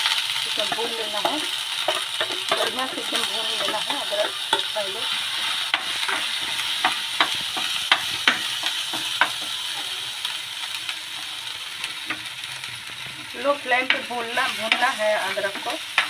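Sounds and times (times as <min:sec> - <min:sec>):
ginger sizzling in oil: 0:00.0 - 0:16.0
utensil scraping a pan: 0:00.6 - 0:09.5.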